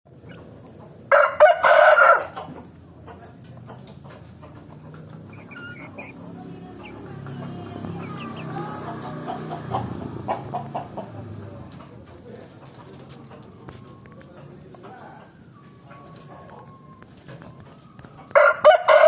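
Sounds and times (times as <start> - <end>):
chicken clucks and calls: 0.1 - 19.0
rooster crowing: 1.1 - 2.4, 18.3 - 19.0.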